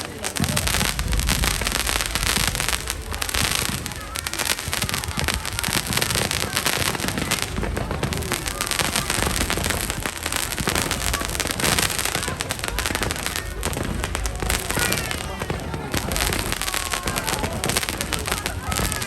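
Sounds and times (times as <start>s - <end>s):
fireworks crackling: 0.0s - 19.0s.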